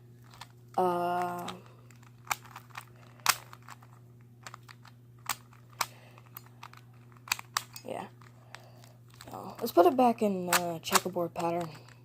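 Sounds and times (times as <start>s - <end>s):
puzzle cube layers clicking: 0.8s - 3.8s, 4.4s - 8.1s.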